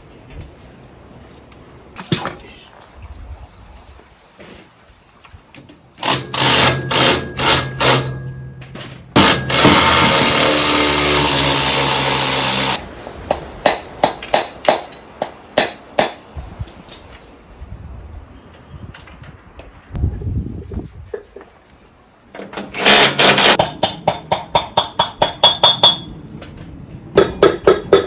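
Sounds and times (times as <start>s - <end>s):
handheld power tool running: 6.0s - 8.1s, 9.2s - 12.8s, 22.8s - 23.6s
sharp knocks: 6.0s - 16.3s, 22.8s - 26.1s, 27.1s - 28.0s.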